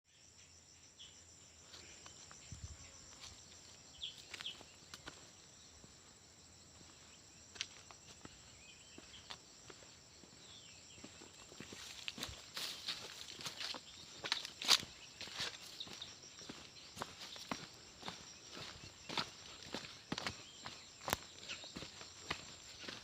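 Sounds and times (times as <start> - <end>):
insects droning: 0.1 - 23.0.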